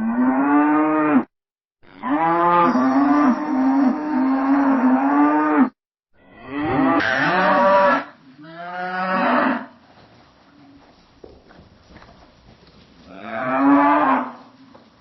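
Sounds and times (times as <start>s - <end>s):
cows mooing: 0.0s - 5.7s, 6.4s - 9.8s, 13.1s - 14.5s.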